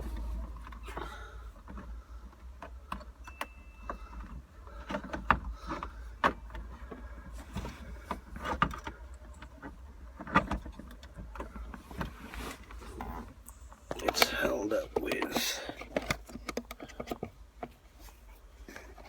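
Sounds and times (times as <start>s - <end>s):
steady low hum: 0.0s - 3.1s.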